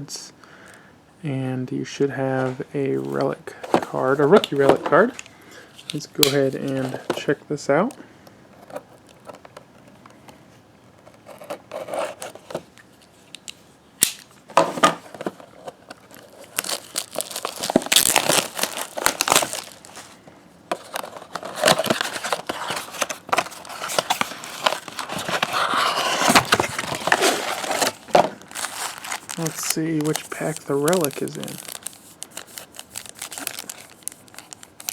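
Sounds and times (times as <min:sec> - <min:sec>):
plastic packaging crinkling: 0:02.4 - 0:08.0, 0:11.0 - 0:34.9.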